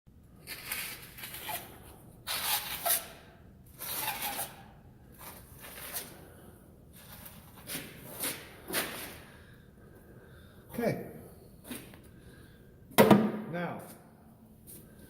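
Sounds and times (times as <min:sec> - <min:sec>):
rustling scraping noises: 0:00.4 - 0:06.3, 0:06.9 - 0:09.3.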